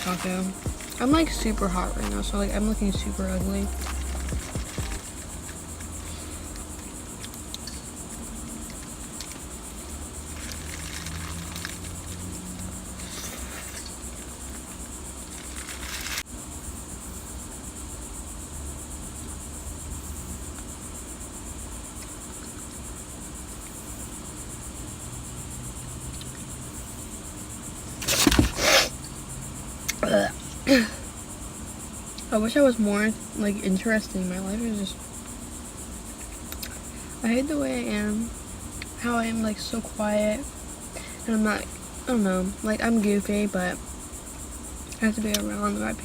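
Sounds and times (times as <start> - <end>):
high-pitched whine: 0.0 - 5.5
low hum: 0.0 - 6.4.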